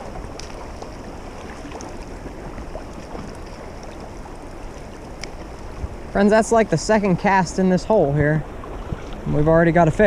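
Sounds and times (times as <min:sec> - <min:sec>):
faint ticks: 0:04.7 - 0:05.7.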